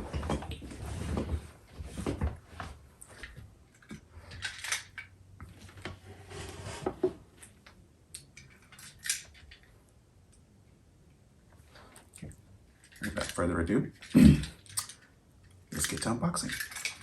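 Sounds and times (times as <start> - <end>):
small hard objects clinking: 15.7 - 17.0.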